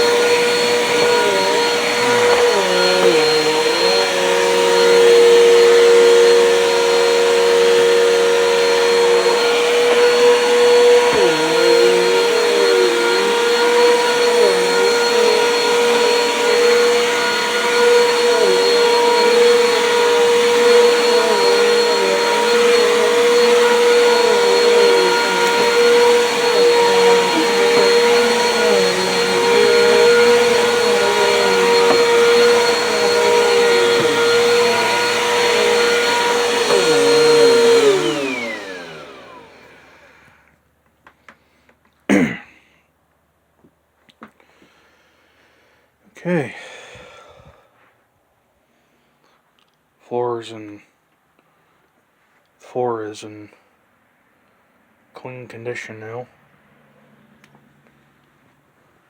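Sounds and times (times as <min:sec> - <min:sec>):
vacuum cleaner on carpet: 0:00.0 - 0:40.4.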